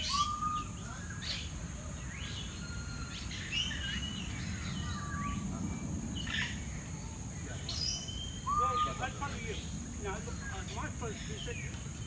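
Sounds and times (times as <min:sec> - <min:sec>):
birds calling: 0:07.6 - 0:12.0.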